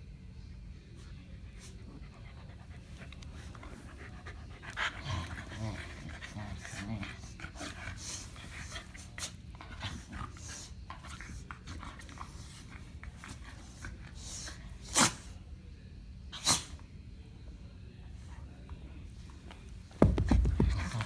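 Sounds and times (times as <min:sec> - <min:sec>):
dog sneezing: 0:13.6 - 0:15.4, 0:16.3 - 0:16.8
dogs snuffling and scuffling: 0:18.1 - 0:21.0.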